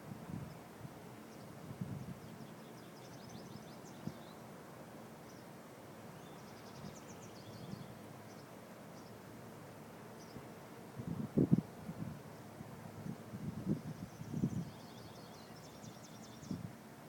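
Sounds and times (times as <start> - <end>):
low wind rumble: 1.6 - 2.3, 10.9 - 14.8
small bird chirping trills: 6.2 - 9.2, 13.8 - 16.6.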